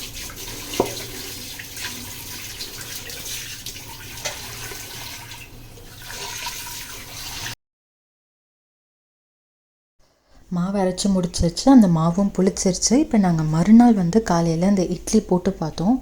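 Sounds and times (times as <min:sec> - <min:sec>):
running and splashing water: 0:00.0 - 0:07.6.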